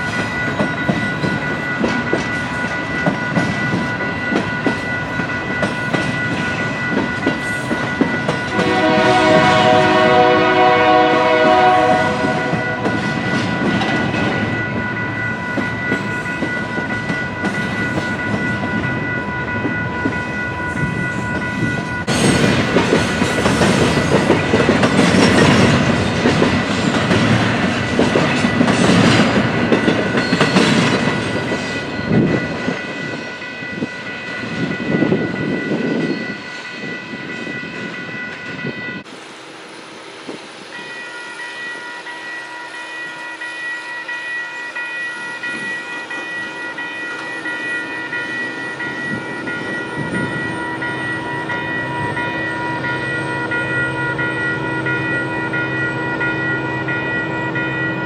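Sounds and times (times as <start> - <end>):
crossing bell ringing: 0.0 - 58.0
freight train rolling past: 0.0 - 58.0
diesel locomotive horn: 8.5 - 13.2.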